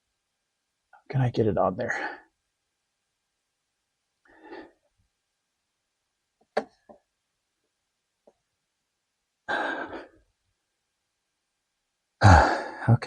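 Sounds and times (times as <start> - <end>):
man breathing: 4.2 - 4.9, 9.5 - 10.3, 12.2 - 12.9
man sighing: 9.5 - 10.2, 12.2 - 13.0.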